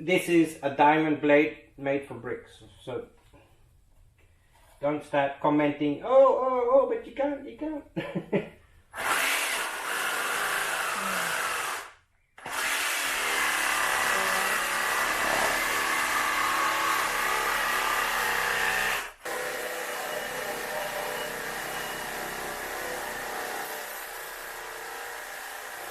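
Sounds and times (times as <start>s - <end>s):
masonry saw cutting whine: 9.4s - 25.9s.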